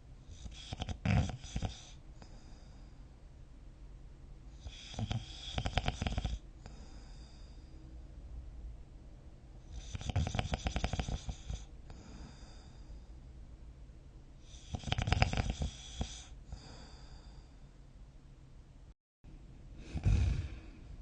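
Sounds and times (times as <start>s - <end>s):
quiet breathing: 0.2s - 3.4s, 4.5s - 8.3s, 9.6s - 13.5s, 14.4s - 17.9s, 19.6s - 21.0s
person snoring: 14.5s - 17.4s, 19.8s - 21.0s.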